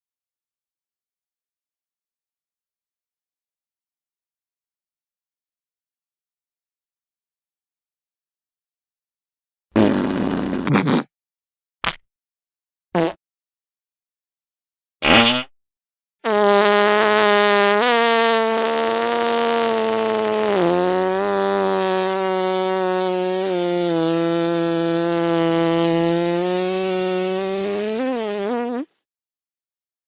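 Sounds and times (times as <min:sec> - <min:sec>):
long buzzy fart sound: 0:09.8 - 0:11.1, 0:13.0 - 0:13.2, 0:15.0 - 0:15.5, 0:16.2 - 0:29.1
short fart blip: 0:09.8 - 0:11.1, 0:11.8 - 0:12.0, 0:13.0 - 0:13.2, 0:15.0 - 0:15.5, 0:16.3 - 0:28.9.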